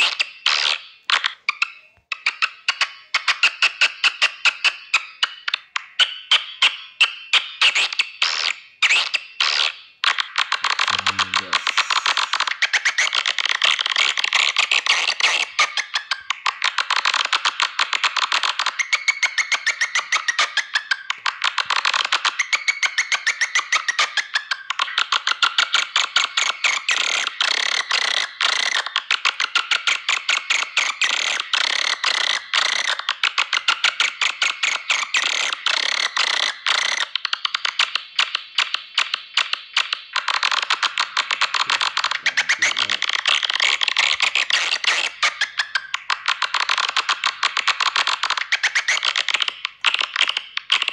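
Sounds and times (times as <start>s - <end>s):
twittering chirps: 10.8s - 12.5s.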